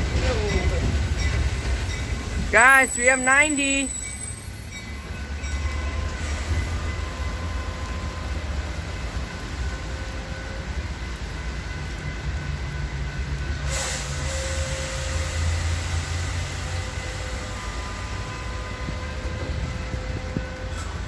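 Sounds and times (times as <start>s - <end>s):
train rumbling: 0.0s - 21.0s
burst of hiss: 13.7s - 16.6s.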